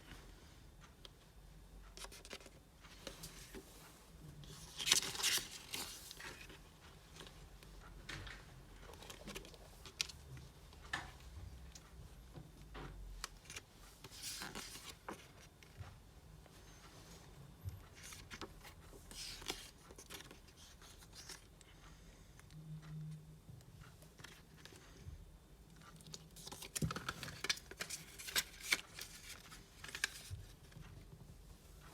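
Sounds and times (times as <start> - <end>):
packaging rustling and scraping: 26.1 - 30.5.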